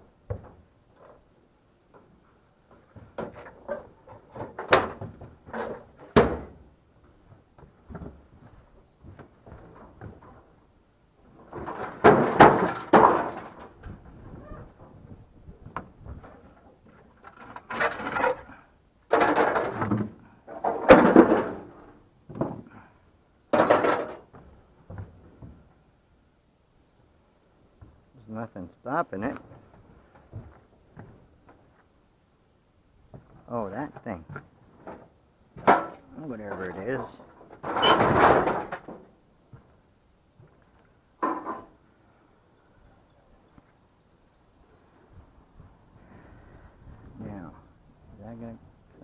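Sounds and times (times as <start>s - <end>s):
heavy objects scraping and clattering: 11.4s - 15.0s, 16.0s - 22.8s, 23.5s - 24.3s, 34.8s - 39.0s.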